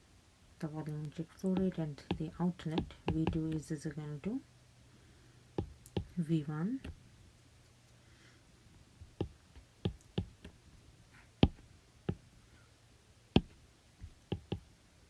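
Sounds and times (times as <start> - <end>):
faint low hum: 0.0 - 15.0
sharp clicks and taps: 1.0 - 3.6, 5.6 - 6.2, 9.0 - 10.6, 11.4 - 12.2, 13.4 - 14.7.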